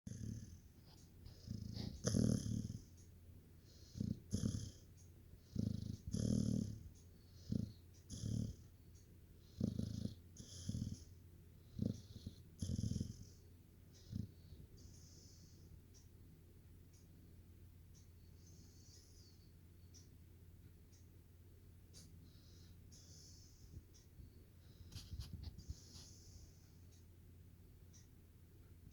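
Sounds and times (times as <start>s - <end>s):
pet snoring: 0.1s - 3.0s, 3.7s - 8.7s, 9.4s - 13.4s, 14.0s - 15.6s.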